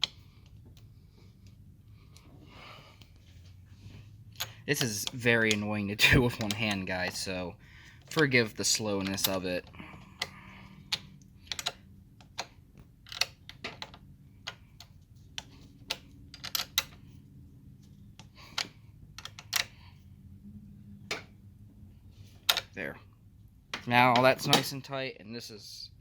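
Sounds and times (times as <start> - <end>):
wrench clicking on metal bolt: 8.1 - 9.5, 10.9 - 12.5, 13.1 - 14.6, 18.5 - 19.8, 22.5 - 22.8.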